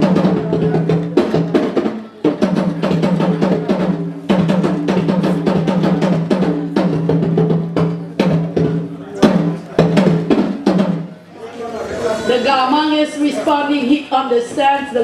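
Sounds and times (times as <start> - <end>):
talking drum played by hand: 0.0 - 11.3.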